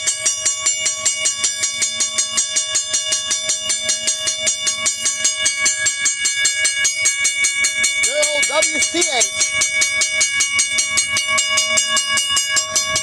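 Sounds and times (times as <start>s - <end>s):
railroad crossing bell ringing: 0.0s - 13.0s.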